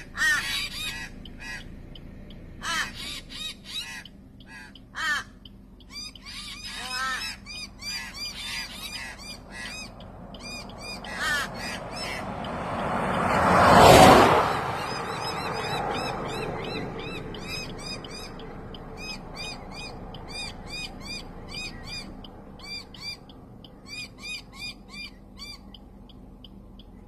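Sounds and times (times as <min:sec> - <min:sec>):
bird calling short arched notes: 0:02.5 - 0:12.3.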